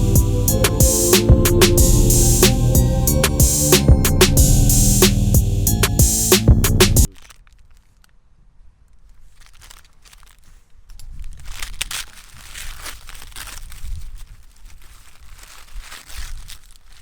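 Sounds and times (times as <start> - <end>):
packaging crinkling and rustling: 7.1 - 17.0.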